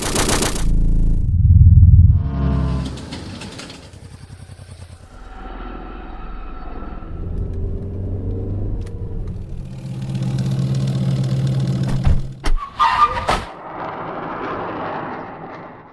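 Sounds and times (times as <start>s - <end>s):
noisy rush: 0.0s - 3.1s
low engine-like drone: 0.2s - 12.4s.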